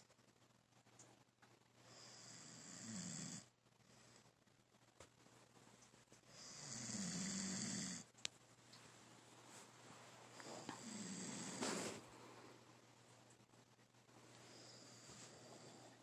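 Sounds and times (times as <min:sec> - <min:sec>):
person snoring: 0:01.9 - 0:03.5, 0:06.3 - 0:08.1, 0:10.6 - 0:12.0.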